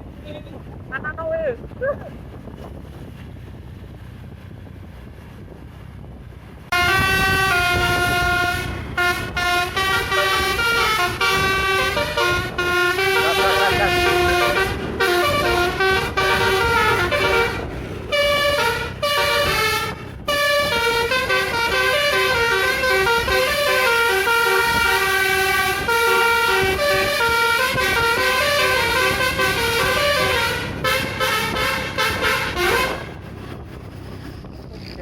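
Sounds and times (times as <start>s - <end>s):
bus musical horn melody: 6.7s - 33.4s.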